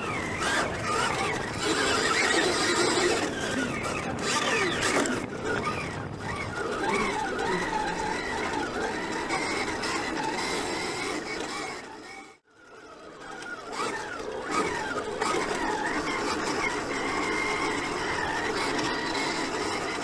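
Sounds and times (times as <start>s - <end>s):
motocross bike engine revving: 0.0s - 12.0s.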